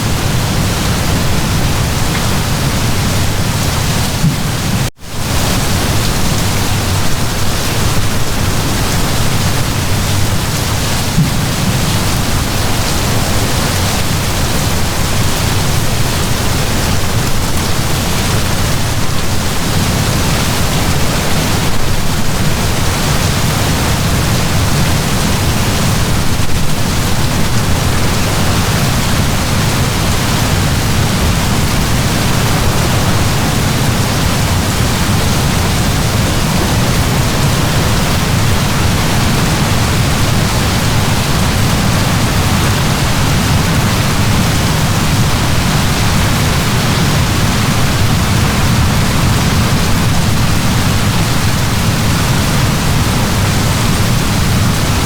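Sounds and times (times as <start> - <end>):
heavy rain downpour: 0.0 - 55.0.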